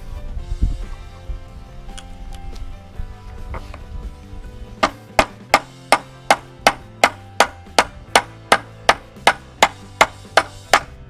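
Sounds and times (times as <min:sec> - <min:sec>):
hammer striking wood: 0:04.8 - 0:11.0.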